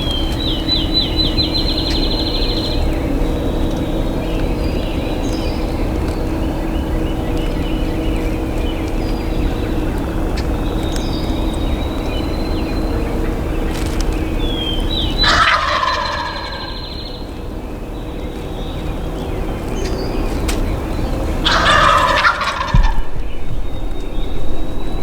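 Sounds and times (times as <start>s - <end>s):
low background noise: 0.0s - 25.0s
turkey gobbling: 14.4s - 17.4s, 20.4s - 25.0s.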